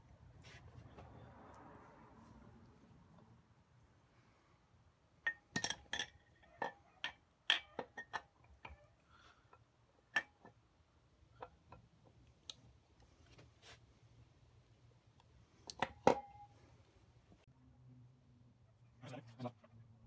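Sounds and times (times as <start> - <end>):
metal engine parts clinking: 5.3 - 6.8.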